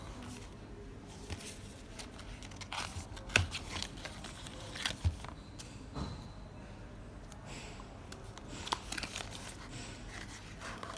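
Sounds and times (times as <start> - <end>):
packaging crinkling and rustling: 8.3 - 10.9.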